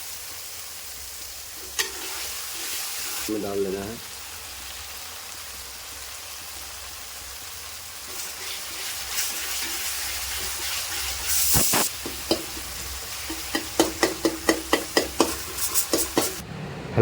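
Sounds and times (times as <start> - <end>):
food sizzling in a pan: 0.0 - 16.4
knocks on a pan: 13.5 - 16.4.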